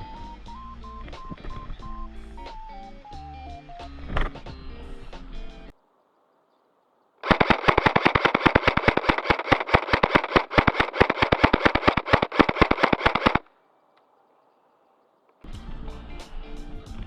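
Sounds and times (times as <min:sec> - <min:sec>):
airsoft gun firing full auto: 0:07.2 - 0:13.5.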